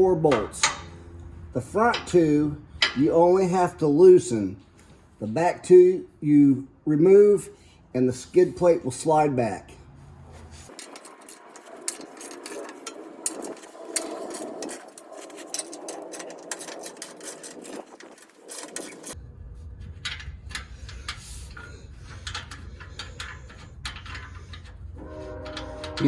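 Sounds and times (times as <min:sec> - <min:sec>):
steady low hum: 0:00.0 - 0:05.4
ratchet wrench clicking: 0:10.7 - 0:19.2, 0:20.1 - 0:24.8.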